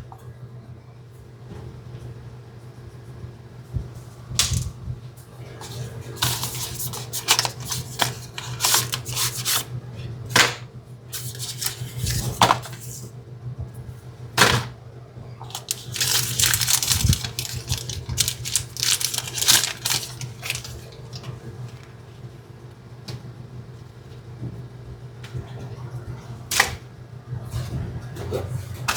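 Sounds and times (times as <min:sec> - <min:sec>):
steady low hum: 0:00.0 - 0:28.7
packaging clicks and rustles: 0:06.1 - 0:09.7, 0:11.2 - 0:13.0, 0:15.5 - 0:22.0.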